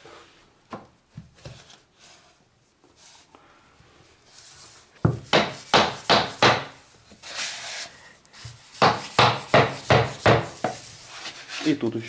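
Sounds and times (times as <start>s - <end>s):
hand saw cutting board: 5.1s - 11.7s.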